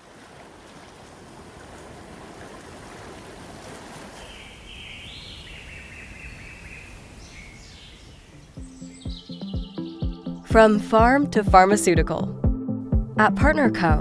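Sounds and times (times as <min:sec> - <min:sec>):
flowing water rushing: 0:00.0 - 0:09.0
bird singing wavering call: 0:04.2 - 0:10.5.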